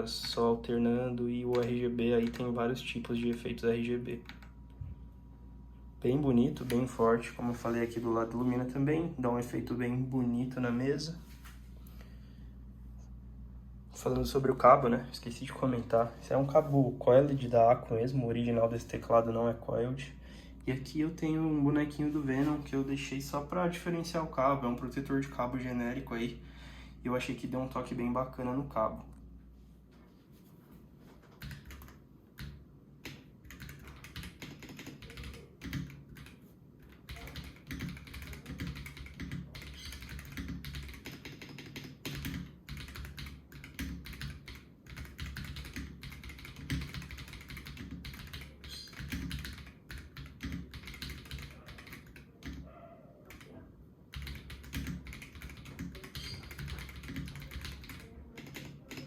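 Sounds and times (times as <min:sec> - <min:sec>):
mechanical keyboard typing: 0:01.4 - 0:04.5, 0:31.4 - 0:52.7, 0:53.3 - 0:59.0.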